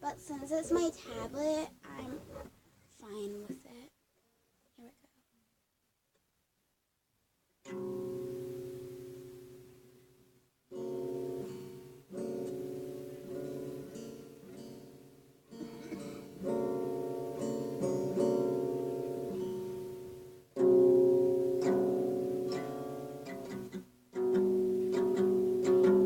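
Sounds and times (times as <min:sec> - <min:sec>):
guitar chords strummed slowly: 0:07.7 - 0:26.0.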